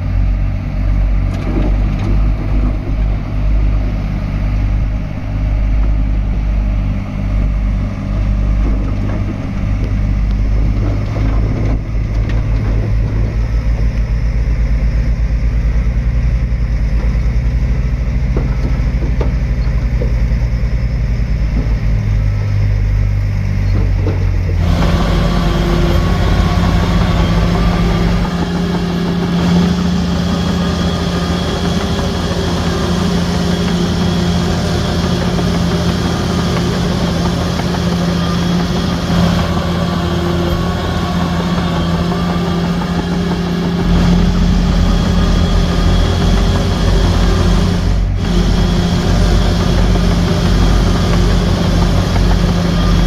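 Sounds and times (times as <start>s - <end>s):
diesel engine drone: 0.0s - 53.0s
machinery clatter: 0.0s - 53.0s.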